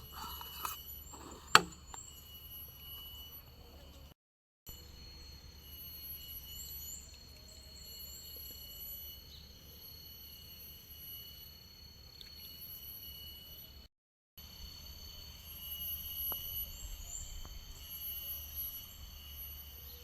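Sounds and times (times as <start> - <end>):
high insect drone: 4.7 - 20.0.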